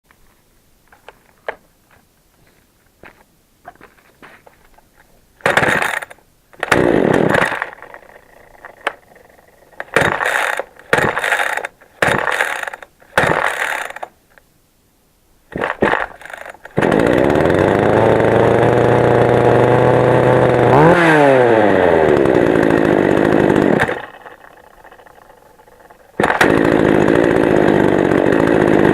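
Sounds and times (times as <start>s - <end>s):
chainsaw engine running: 5.4s - 14.1s, 15.5s - 28.9s
chainsaw starter pulls: 5.4s - 14.2s, 15.5s - 28.9s.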